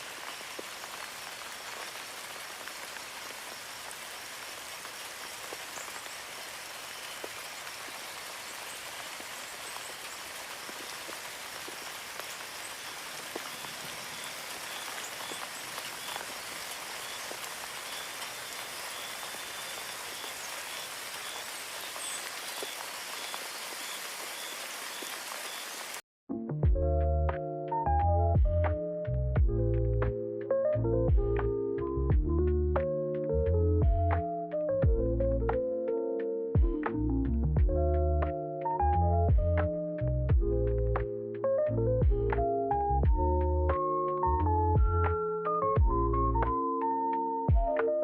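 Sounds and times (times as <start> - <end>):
steady rain falling: 0.0 - 26.0, 36.6 - 47.9.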